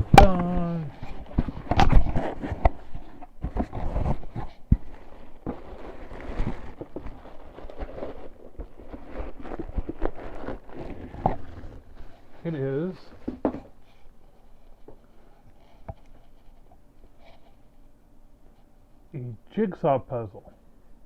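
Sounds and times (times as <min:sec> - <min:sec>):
packaging rustling and tearing: 0:00.0 - 0:13.8
small knocks and scrapes: 0:01.0 - 0:17.6.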